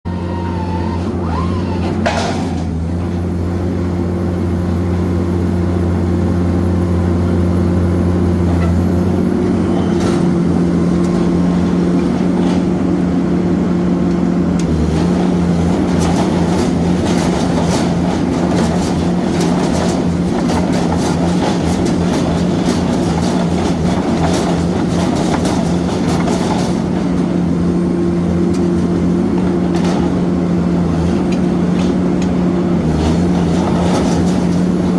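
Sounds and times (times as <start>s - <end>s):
excavator engine running: 0.1s - 34.9s
metallic clanking and rattling: 1.8s - 3.1s, 15.6s - 27.5s, 33.0s - 34.9s.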